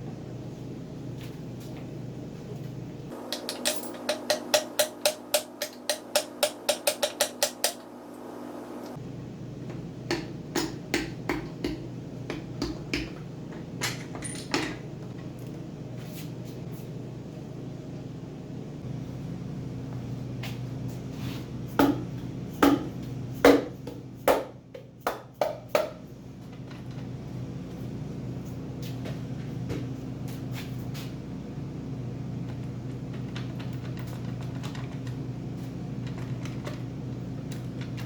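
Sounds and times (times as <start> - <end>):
steady low hum: 0.0 - 38.0
metallic knocks on engine parts: 3.2 - 7.8.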